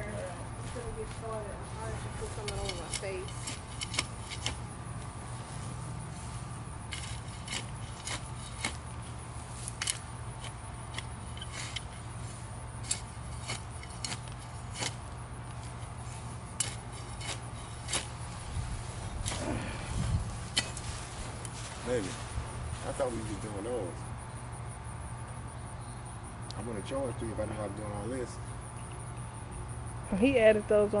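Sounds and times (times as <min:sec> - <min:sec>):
steady low hum: 0:00.0 - 0:31.0
brush snapping and breaking: 0:06.9 - 0:11.9.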